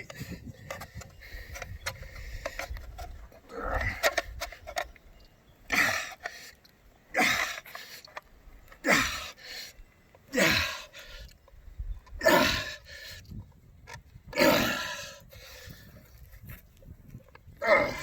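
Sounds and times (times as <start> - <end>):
small clicks and creaks: 0.0 - 5.4, 6.1 - 6.8, 7.5 - 8.8, 13.2 - 14.2
man grunting and exhaling: 3.4 - 4.2, 5.7 - 6.2, 7.1 - 7.7, 8.8 - 9.4, 10.3 - 11.2, 12.2 - 13.0, 14.3 - 15.2, 17.6 - 18.0.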